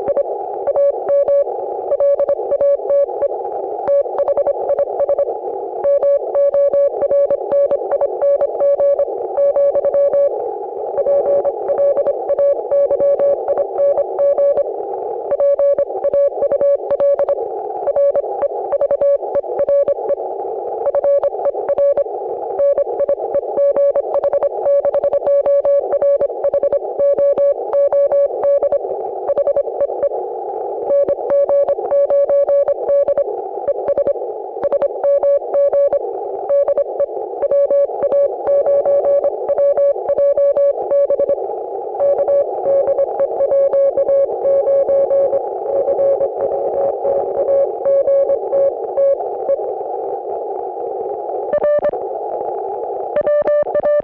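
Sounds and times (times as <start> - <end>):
radio band noise hiss: 0.0 - 54.0
static clicks: 0.0 - 54.0
morse code tone: 0.1 - 10.3, 11.0 - 14.6, 22.6 - 30.1, 30.9 - 41.4, 42.0 - 49.6, 51.5 - 51.9, 53.2 - 54.0.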